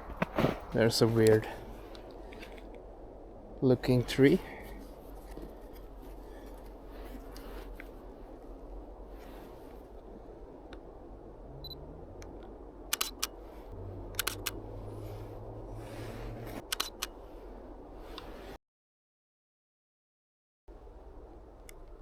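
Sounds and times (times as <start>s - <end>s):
camera shutter double click: 12.9s - 13.3s, 14.2s - 14.6s, 16.7s - 17.1s.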